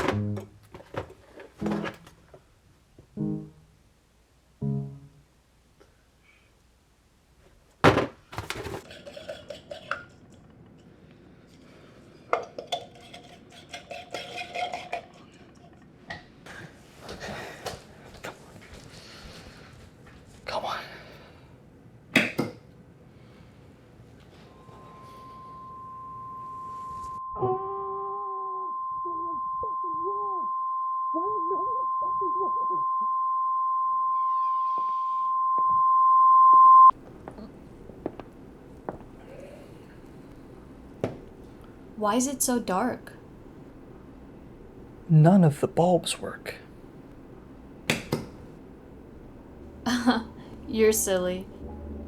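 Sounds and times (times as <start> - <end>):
high-pitched electronic tone: 4.6 - 5.2, 24.5 - 36.9
thin squeak: 24.4 - 27.2.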